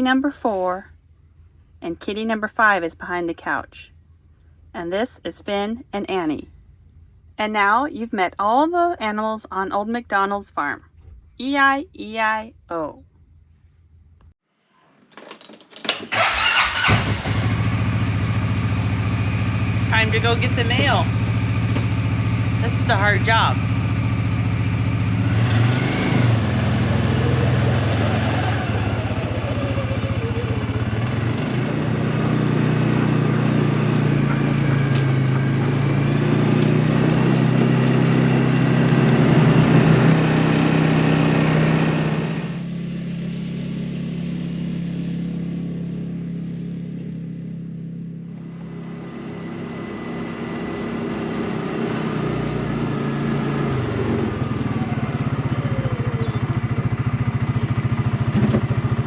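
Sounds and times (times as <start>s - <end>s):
small vehicle engine running: 16.1s - 59.0s.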